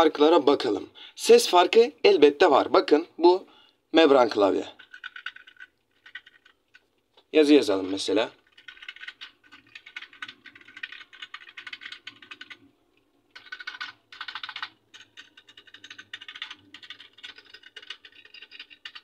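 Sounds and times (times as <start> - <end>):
typing on membrane keyboard: 4.8 - 6.6, 8.4 - 12.7, 13.3 - 19.0.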